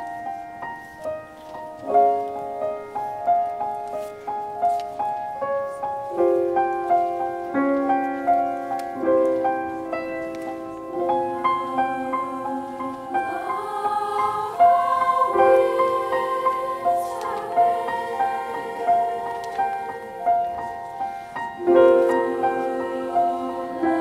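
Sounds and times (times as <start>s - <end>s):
gentle piano accompaniment: 0.0s - 24.0s
youth choir singing: 11.0s - 24.0s.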